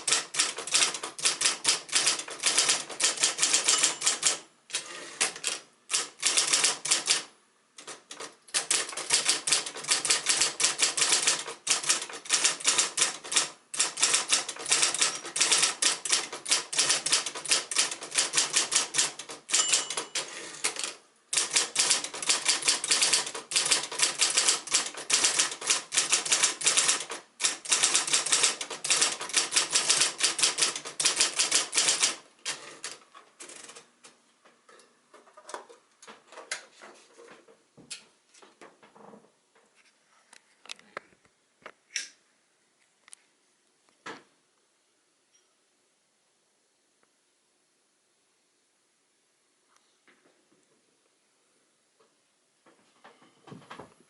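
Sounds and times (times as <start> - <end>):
electric typewriter typing: 0.0 - 33.9.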